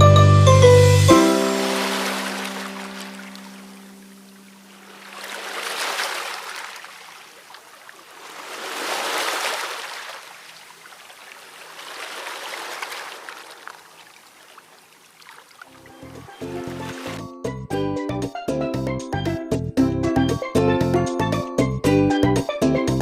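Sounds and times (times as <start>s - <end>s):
water washing in swells: 1.0s - 17.2s.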